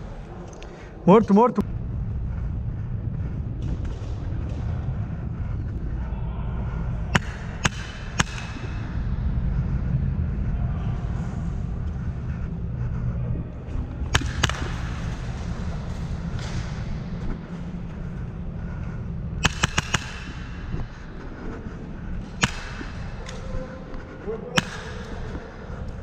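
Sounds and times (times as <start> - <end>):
steady low rumble: 0.0 - 26.0
airsoft guns firing: 7.1 - 8.9, 14.1 - 15.4, 19.4 - 21.0, 22.2 - 23.6, 24.6 - 25.8.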